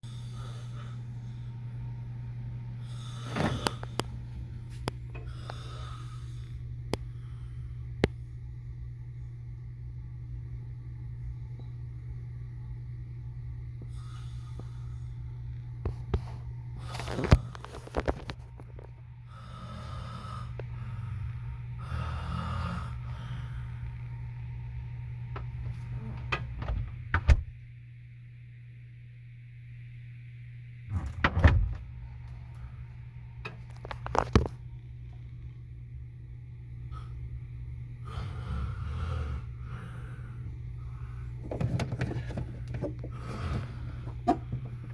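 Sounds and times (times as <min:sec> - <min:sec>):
noisy breath: 0:00.0 - 0:01.8, 0:02.7 - 0:08.0, 0:13.8 - 0:18.0, 0:19.2 - 0:24.1, 0:36.8 - 0:37.4, 0:38.0 - 0:44.9
low steady hum: 0:00.0 - 0:44.9
person snoring: 0:19.3 - 0:23.8, 0:38.0 - 0:41.2.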